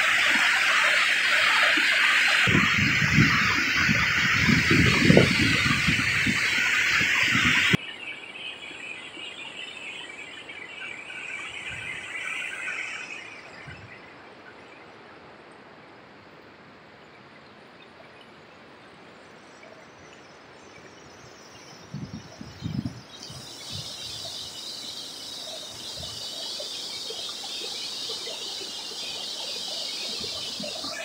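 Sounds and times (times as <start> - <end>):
water rushing: 0.0 - 7.8, 23.1 - 31.0.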